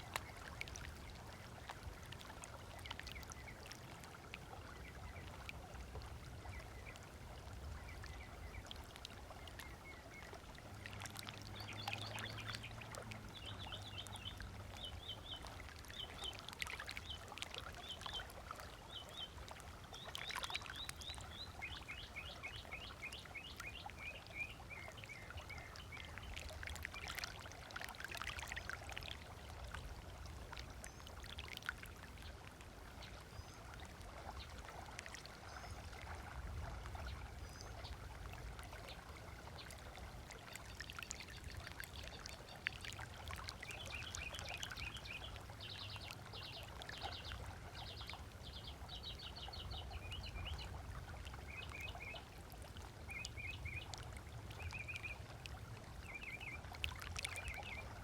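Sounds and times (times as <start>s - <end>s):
small waves lapping on shore: 0.0s - 58.0s.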